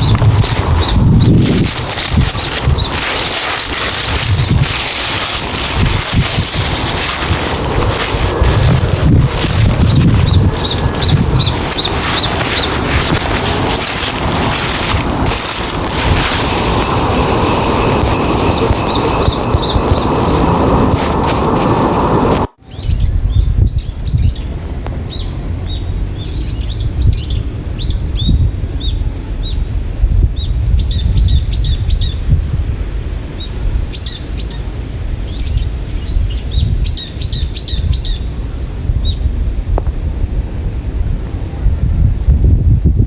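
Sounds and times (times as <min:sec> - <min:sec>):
loud rushing noise: 0:00.0 - 0:22.6
small birds chirping: 0:00.0 - 0:24.5
wind rumble on microphone: 0:00.0 - 0:43.0.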